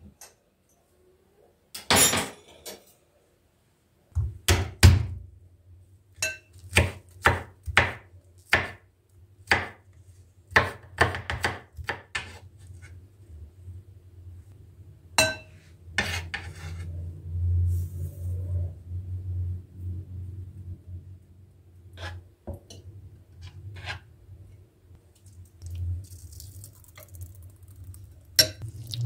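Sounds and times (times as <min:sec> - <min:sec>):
knife chopping on cutting board: 0:06.7 - 0:08.8, 0:09.5 - 0:09.8, 0:10.5 - 0:12.4
low steady hum: 0:12.5 - 0:29.0.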